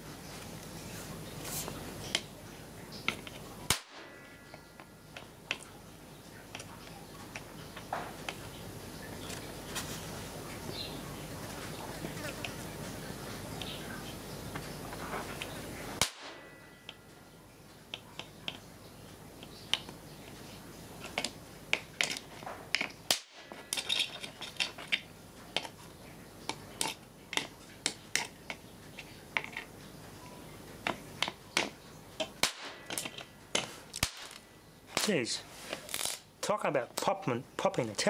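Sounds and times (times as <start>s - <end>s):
electrical snaps and pops: 3.0s - 4.2s, 14.5s - 16.5s, 21.0s - 25.8s, 30.8s - 38.0s.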